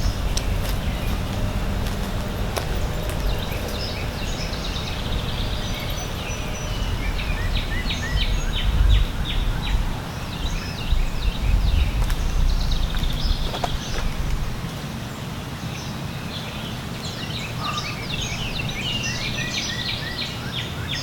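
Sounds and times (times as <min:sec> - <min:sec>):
low rumble: 0:00.0 - 0:14.7
songbirds singing: 0:00.0 - 0:21.0.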